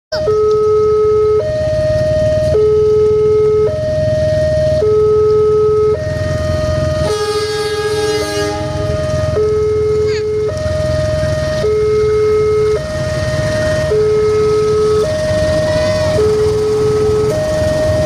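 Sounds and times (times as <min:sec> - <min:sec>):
two-tone electronic warning alarm: 0:00.1 - 0:18.0
low engine rumble: 0:00.2 - 0:18.0.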